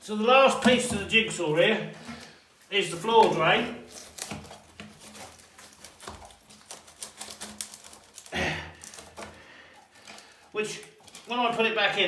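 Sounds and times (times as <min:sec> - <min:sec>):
small parts clicking and knocking: 0:03.9 - 0:11.4.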